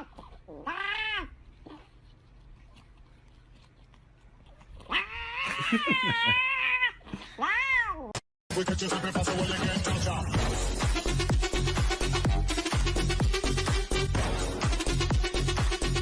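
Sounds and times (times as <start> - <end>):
cat meowing: 0.5 - 1.4, 4.9 - 8.2
music: 8.5 - 16.0.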